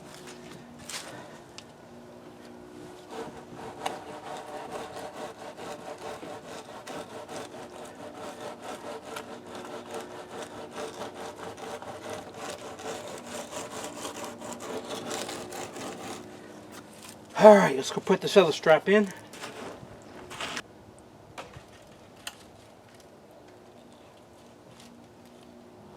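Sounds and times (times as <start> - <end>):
hand tool scraping: 2.4 - 20.6.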